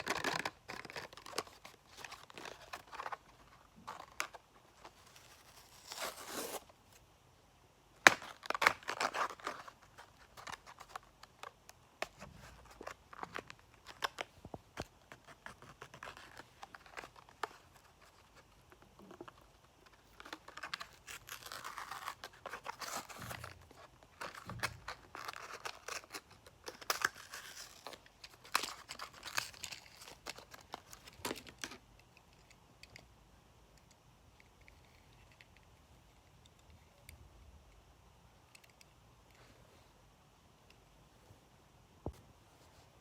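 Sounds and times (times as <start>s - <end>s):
packaging torn and crinkled: 20.2s - 23.2s, 24.1s - 31.7s.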